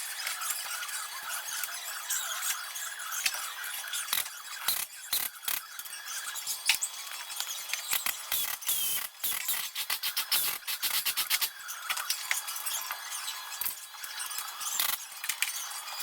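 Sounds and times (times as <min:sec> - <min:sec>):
hand tools clicking and ratcheting: 0:03.9 - 0:05.8, 0:07.7 - 0:12.3, 0:13.6 - 0:15.6.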